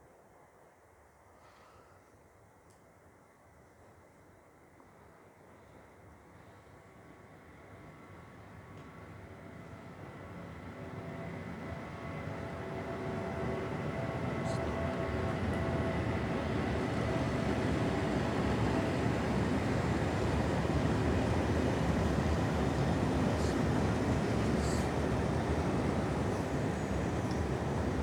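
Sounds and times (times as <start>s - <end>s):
train wheels rumbling on rails: 7.7s - 28.0s.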